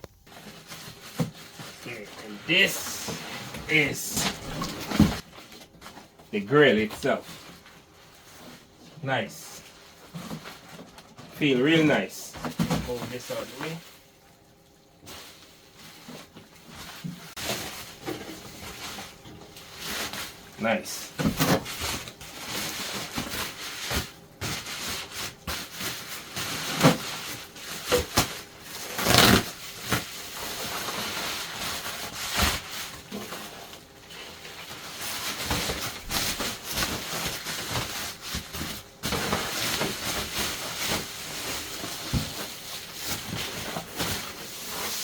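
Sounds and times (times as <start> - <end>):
packing material rustling: 15.0 - 45.0.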